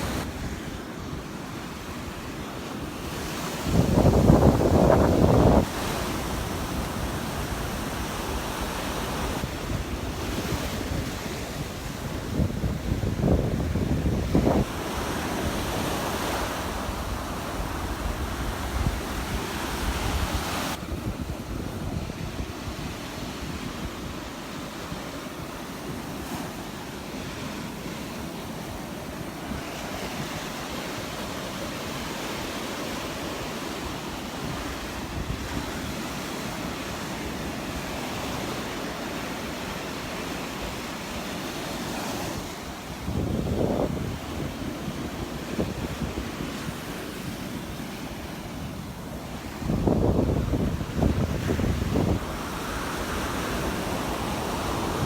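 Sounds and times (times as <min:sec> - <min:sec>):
surf washing onto beach: 0:00.0 - 0:55.0
wind buffeting microphone: 0:03.0 - 0:24.4, 0:42.1 - 0:55.0.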